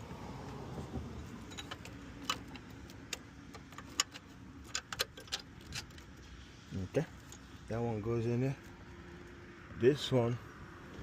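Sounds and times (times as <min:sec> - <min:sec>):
bolt clicking and tapping: 0:01.6 - 0:06.1.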